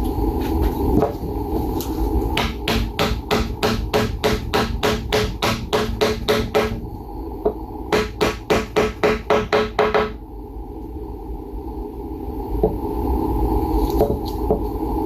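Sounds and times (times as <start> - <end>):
hammer tapping wood: 2.4 - 6.8.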